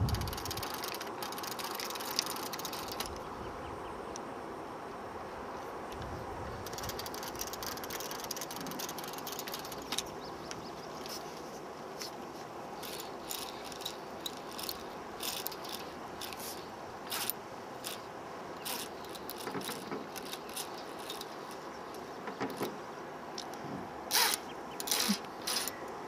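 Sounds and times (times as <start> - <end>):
fishing reel ratcheting: 0.0 - 3.2, 6.6 - 10.1, 12.8 - 21.6, 23.4 - 25.8
steady rushing noise: 0.0 - 18.6.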